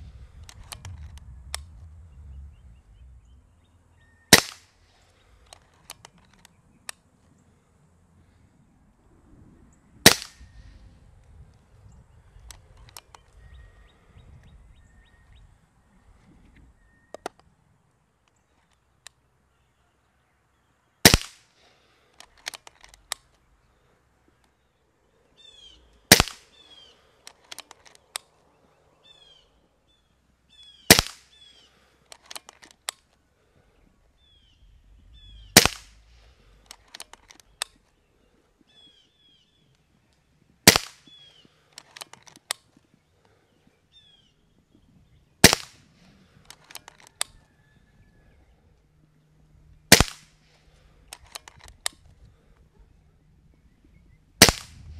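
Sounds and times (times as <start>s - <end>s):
quiet clicks: 0.4s - 1.8s, 5.4s - 7.1s, 12.4s - 13.4s, 22.1s - 23.5s, 46.4s - 47.4s
air rifle shots: 4.3s - 4.9s, 10.0s - 10.7s, 21.0s - 21.6s, 26.1s - 26.8s, 30.9s - 31.5s, 35.2s - 37.8s, 40.6s - 41.2s, 45.4s - 46.8s, 49.9s - 50.5s, 54.4s - 54.9s.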